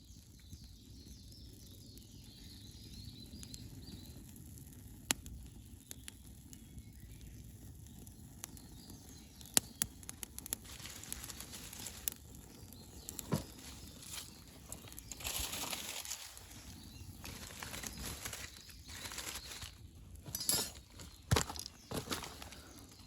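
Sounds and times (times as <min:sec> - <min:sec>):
burning wood popping: 0:00.0 - 0:23.0
campfire crackling: 0:00.0 - 0:23.0
fire hissing: 0:00.1 - 0:23.0.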